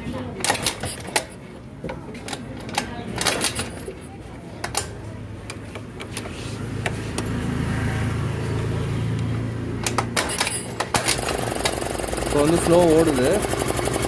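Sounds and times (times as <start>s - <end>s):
scooter engine idling: 11.0s - 14.0s.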